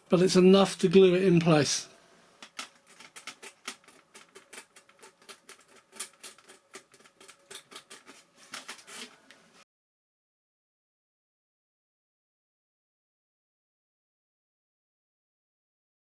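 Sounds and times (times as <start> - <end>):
hobby blade scraping paint: 2.8 - 9.3.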